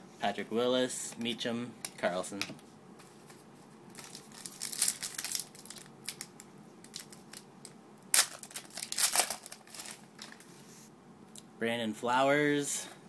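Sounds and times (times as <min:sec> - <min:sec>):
foil wrapper tearing: 0:03.9 - 0:07.4, 0:08.1 - 0:10.4
foil wrapper crinkling: 0:03.9 - 0:07.5, 0:08.1 - 0:10.5.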